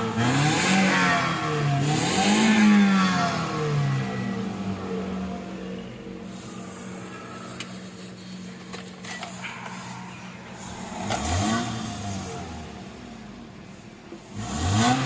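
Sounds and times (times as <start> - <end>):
car engine idling and revving: 0.0 - 15.0.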